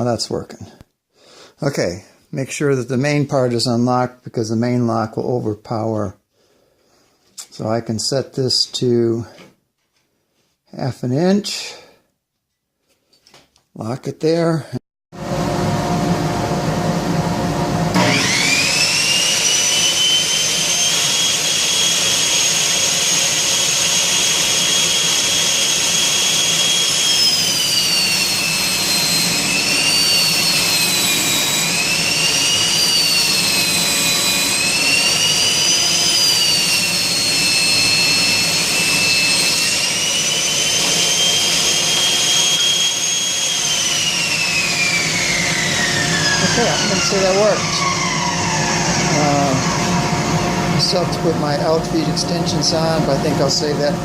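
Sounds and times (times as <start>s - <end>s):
table saw whine: 15.2s - 54.0s.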